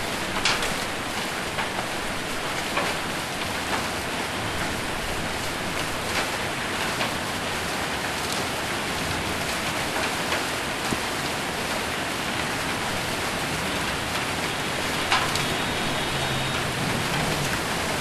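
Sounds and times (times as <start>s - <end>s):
heavy rain on a roof: 0.0s - 18.0s
hailstones hitting: 14.1s - 18.0s.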